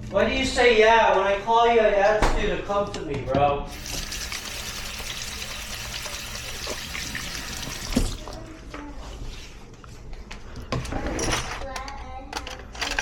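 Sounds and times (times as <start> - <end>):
tap water running into sink: 3.7 - 8.4.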